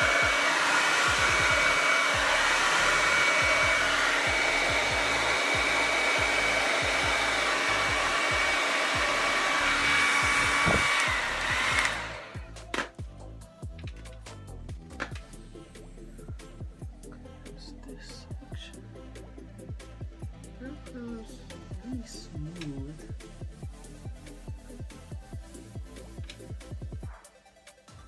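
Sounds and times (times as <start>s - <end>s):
hair dryer running: 0.0s - 12.9s.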